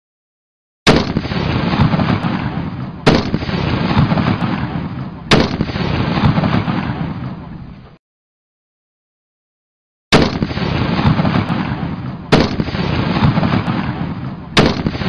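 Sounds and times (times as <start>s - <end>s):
rifle shots with long echo: 0.9s - 7.6s, 10.1s - 15.0s.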